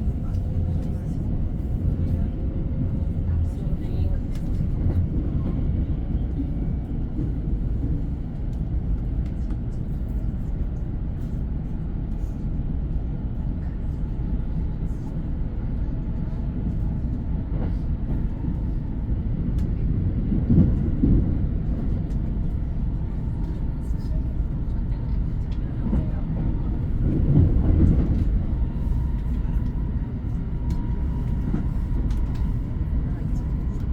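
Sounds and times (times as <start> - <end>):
train rumbling on track: 0.0 - 33.9.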